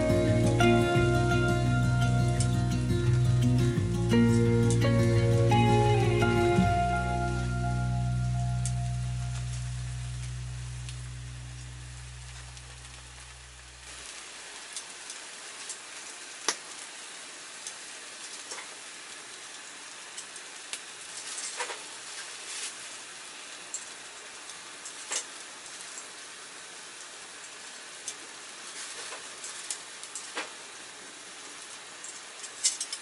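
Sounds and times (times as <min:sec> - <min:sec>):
food sizzling in a frying pan: 0:00.0 - 0:33.0
sharp pops and crackles: 0:08.6 - 0:16.9, 0:17.6 - 0:18.8, 0:19.5 - 0:22.9, 0:23.6 - 0:26.2, 0:27.0 - 0:30.7, 0:31.5 - 0:33.0.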